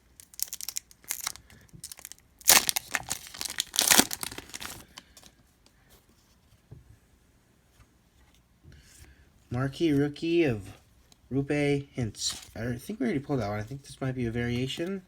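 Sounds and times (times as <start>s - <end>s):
plastic wrapper crinkling and tearing: 0.0s - 5.3s
cards rustling: 0.1s - 5.3s, 12.1s - 15.0s.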